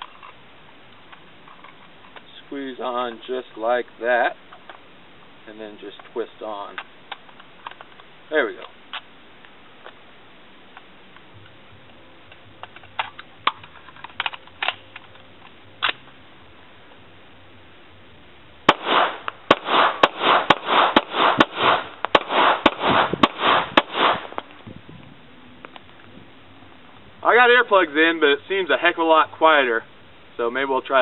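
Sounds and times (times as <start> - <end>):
suppressed gunshots: 18.7 - 24.5.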